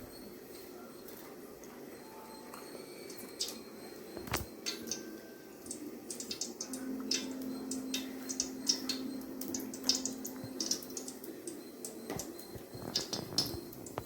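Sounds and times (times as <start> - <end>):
hot oil crackling and popping: 5.7 - 14.0.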